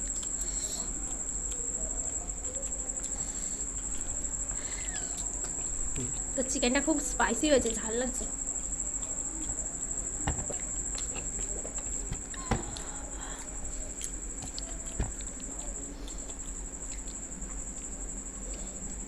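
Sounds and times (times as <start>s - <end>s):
tableware knocking: 10.2s - 10.6s.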